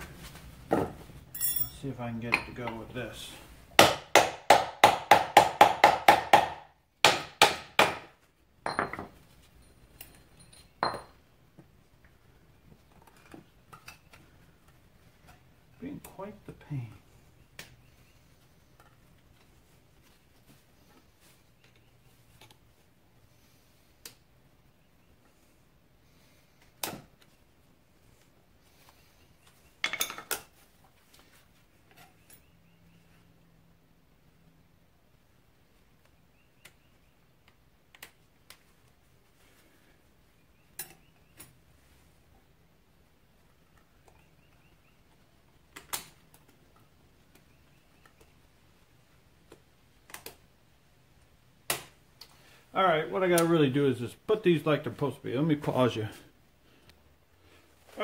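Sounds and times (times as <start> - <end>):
faint metal clinks: 1.3 - 2.5, 8.6 - 11.2.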